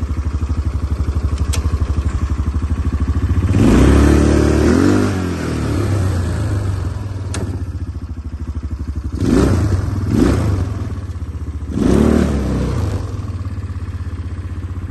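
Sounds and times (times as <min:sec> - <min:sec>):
atv engine idling and revving: 0:00.0 - 0:14.9
sharp click: 0:01.3 - 0:01.8, 0:07.3 - 0:07.6.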